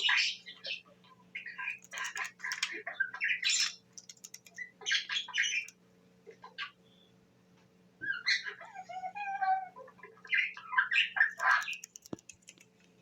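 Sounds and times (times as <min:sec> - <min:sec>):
budgerigar chirping and squawking: 0:00.0 - 0:03.8, 0:04.5 - 0:05.7, 0:10.2 - 0:11.9.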